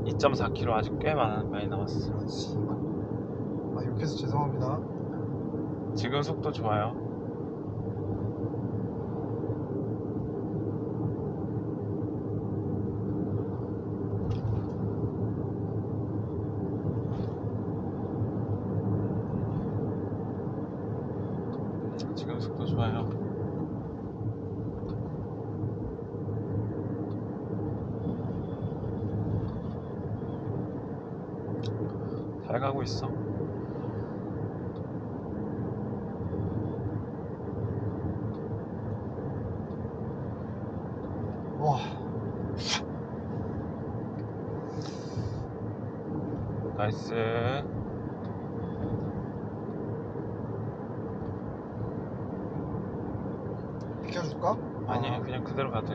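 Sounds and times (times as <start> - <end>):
car road and engine noise: 0.0 - 55.9.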